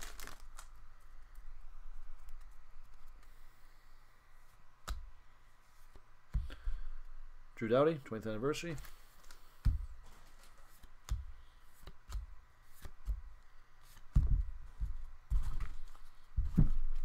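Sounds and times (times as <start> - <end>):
cards and wrappers handled: 0.0 - 1.4.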